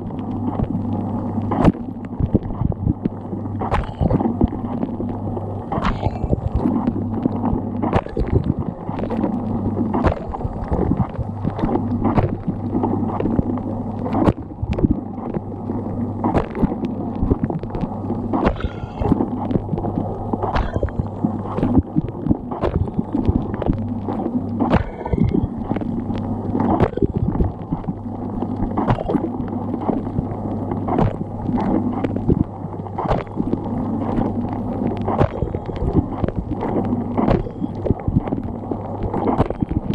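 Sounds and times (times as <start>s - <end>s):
water splashing against racks: 5.7s - 15.0s, 16.2s - 30.2s, 30.9s - 38.4s.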